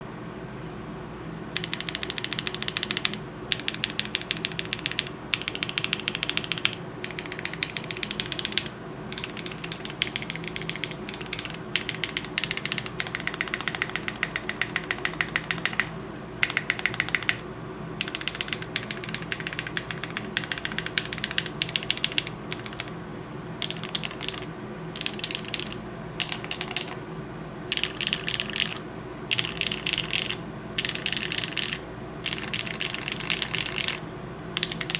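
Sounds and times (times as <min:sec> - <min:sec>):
mechanical keyboard typing: 0:01.6 - 0:17.4, 0:18.0 - 0:23.0, 0:23.6 - 0:27.0, 0:27.7 - 0:34.0, 0:34.6 - 0:34.9.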